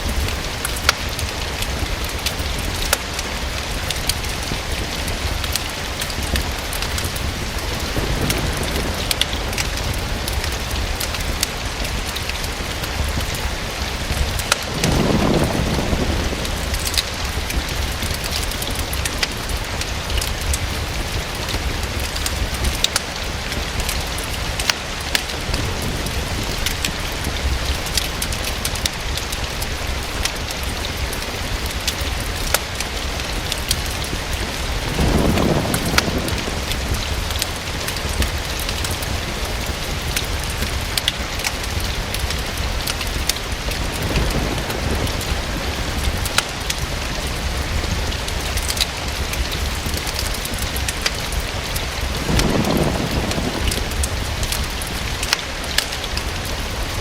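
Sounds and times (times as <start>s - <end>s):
rain falling: 0.0s - 57.0s
wood fire popping and crackling: 0.0s - 57.0s.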